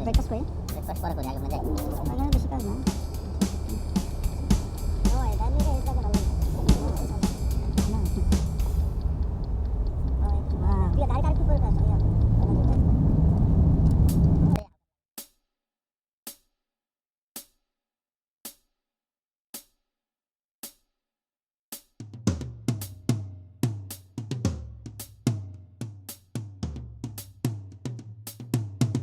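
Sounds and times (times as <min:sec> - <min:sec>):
drum beat with kick and snare: 0:00.0 - 0:10.6, 0:16.3 - 0:16.5, 0:18.5 - 0:18.7, 0:19.6 - 0:19.8, 0:20.6 - 0:20.8, 0:21.7 - 0:29.0
hi-hat ticking: 0:00.0 - 0:14.6.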